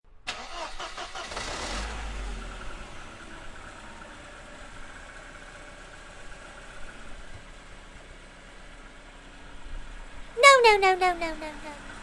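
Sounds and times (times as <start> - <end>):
engine starting and idling: 0.2 - 6.8.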